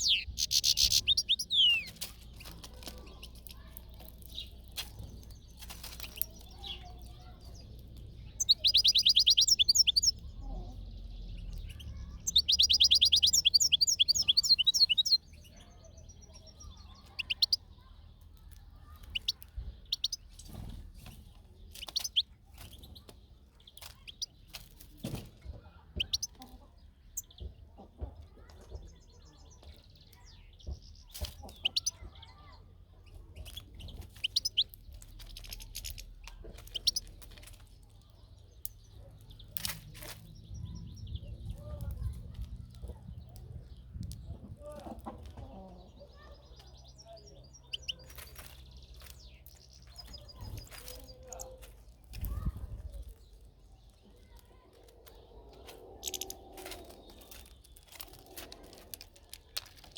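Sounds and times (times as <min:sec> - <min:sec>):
goldfinch twittering: 0:00.0 - 0:02.4, 0:08.4 - 0:10.2, 0:12.2 - 0:15.2
bird chirps: 0:00.0 - 0:24.6, 0:25.9 - 0:27.6, 0:28.3 - 0:43.8, 0:45.8 - 0:58.4.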